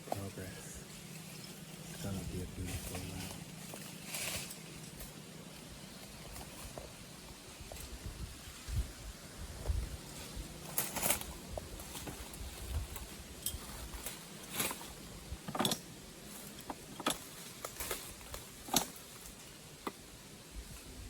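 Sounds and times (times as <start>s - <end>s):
footsteps crunching on rough ground: 0.0s - 15.5s
wind rumble on microphone: 6.2s - 14.1s.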